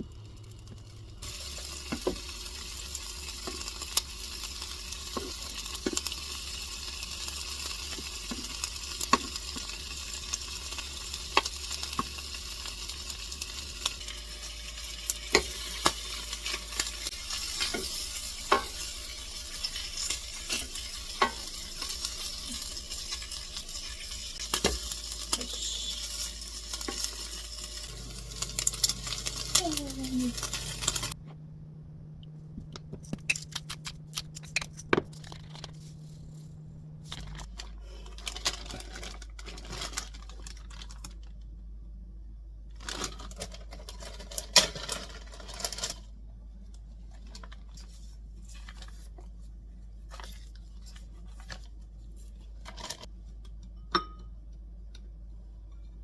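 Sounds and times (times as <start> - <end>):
food sizzling in a frying pan: 0.0 - 31.2.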